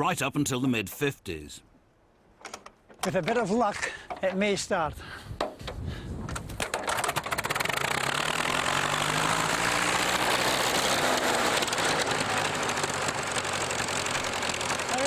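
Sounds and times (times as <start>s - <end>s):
old engine starting and running: 6.6s - 15.0s.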